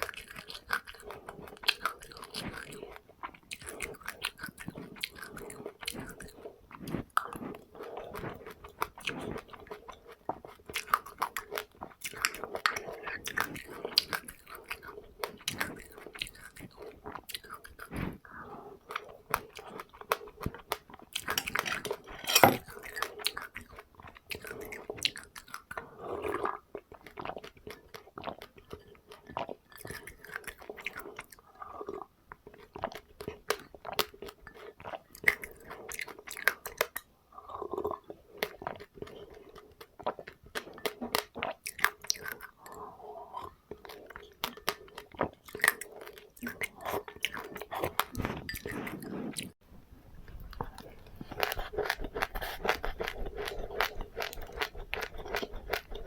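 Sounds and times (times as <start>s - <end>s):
person chewing crunchy seeds: 0.0s - 32.0s, 32.6s - 49.6s, 50.4s - 56.0s.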